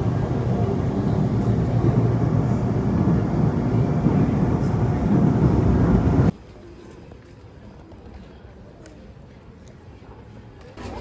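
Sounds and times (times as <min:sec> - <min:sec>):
loud low rumbling: 0:00.0 - 0:06.3.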